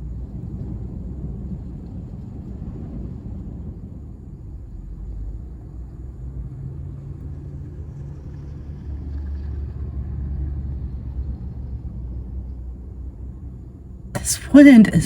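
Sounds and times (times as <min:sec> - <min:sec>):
wind buffeting a car: 0:00.0 - 0:07.2.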